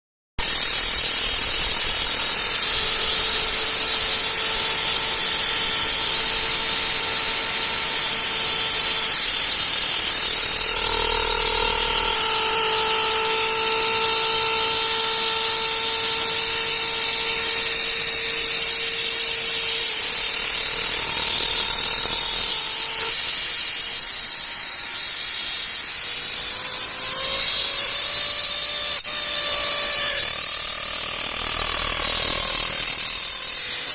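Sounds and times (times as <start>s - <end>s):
insects buzzing: 0.4s - 33.9s
steady low tones: 0.6s - 23.7s.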